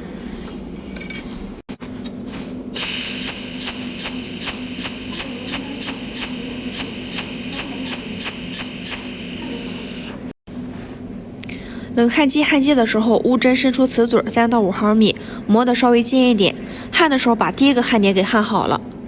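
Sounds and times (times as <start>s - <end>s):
welding machine zaps: 2.3s - 10.3s.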